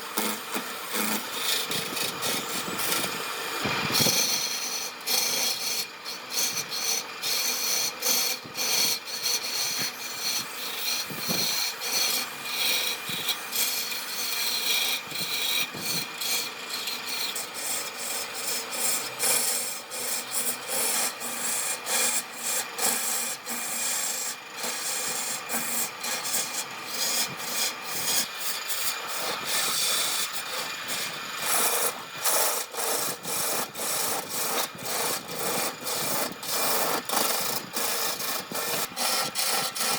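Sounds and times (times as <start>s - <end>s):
rough scraping on wood: 0.2s - 17.4s, 23.2s - 39.9s.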